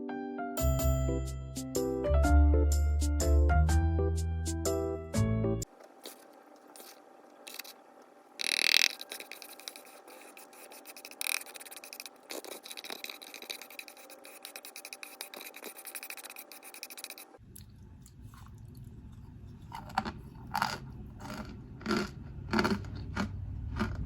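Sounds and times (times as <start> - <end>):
rustling scrape: 5.9 - 17.4
gritty powder scraping: 6.0 - 17.4.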